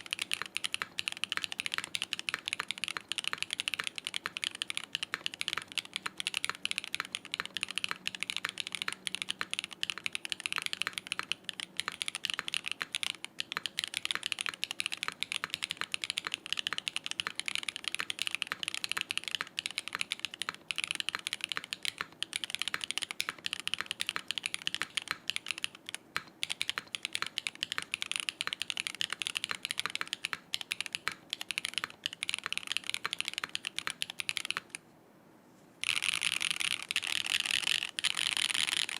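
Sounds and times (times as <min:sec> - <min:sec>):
fast typing on mechanical keyboard: 0:00.0 - 0:34.8, 0:35.8 - 0:38.9.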